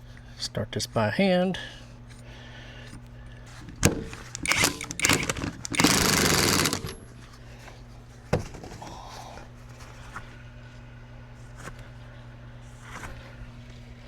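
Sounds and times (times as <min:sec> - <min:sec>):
impact wrench hammering: 0:03.8 - 0:07.1.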